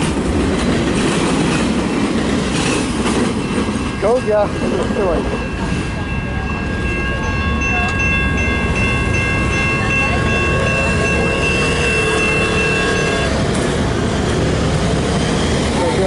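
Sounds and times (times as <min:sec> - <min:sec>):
freight train rumbling past: 0:00.0 - 0:16.0
high-pitched ringing tone: 0:03.4 - 0:13.4.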